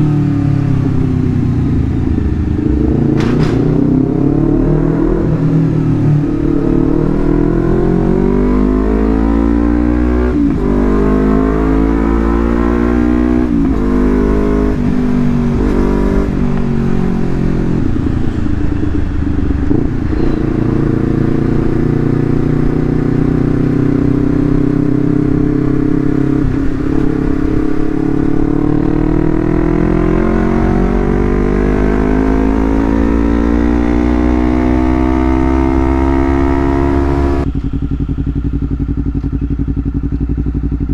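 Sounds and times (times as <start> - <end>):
motorcycle engine revving: 0.0 - 40.9.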